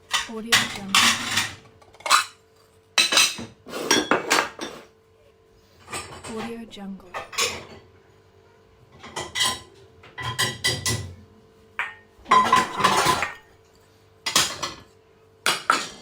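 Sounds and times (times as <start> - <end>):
dishes and cutlery clattering: 0.1 - 2.4, 3.0 - 4.9, 5.8 - 7.9, 8.9 - 11.2, 11.8 - 13.5, 14.3 - 14.9, 15.5 - 16.0.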